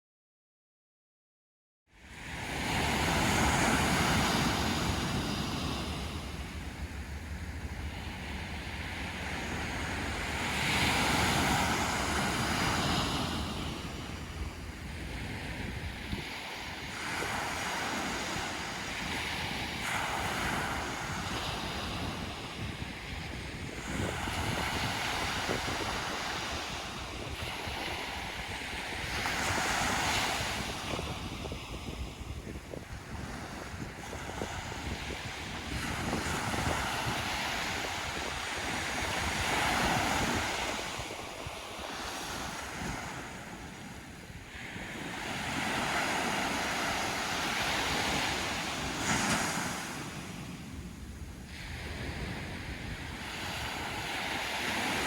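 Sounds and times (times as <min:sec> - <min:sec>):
sea waves breaking on sand: 0:02.0 - 0:55.0
wind buffeting microphone: 0:02.2 - 0:55.0.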